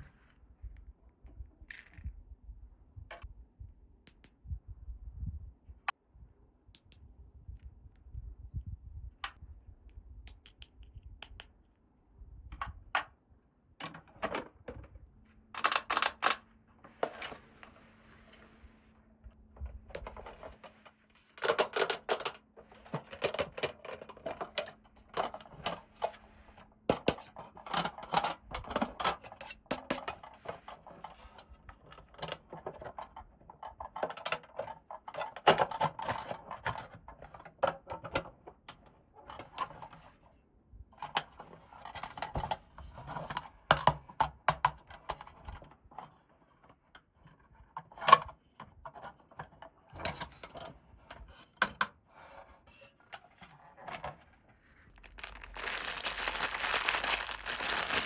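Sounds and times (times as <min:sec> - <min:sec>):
plastic toy pieces clicking: 0:55.0 - 0:58.0.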